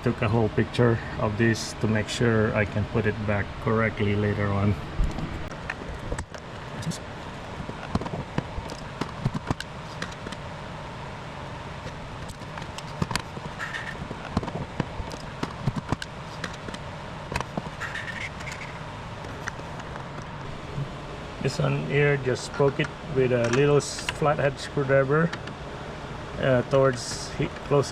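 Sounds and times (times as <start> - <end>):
steady background hum: 0.0 - 27.9
brief squeaks: 17.8 - 18.8.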